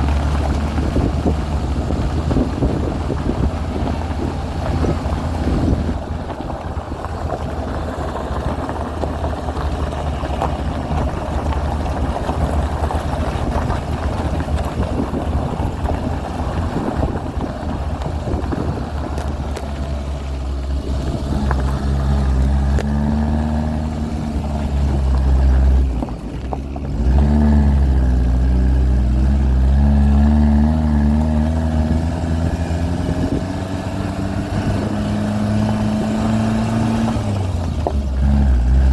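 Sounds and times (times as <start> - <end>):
car engine driving off road: 0.0 - 38.9.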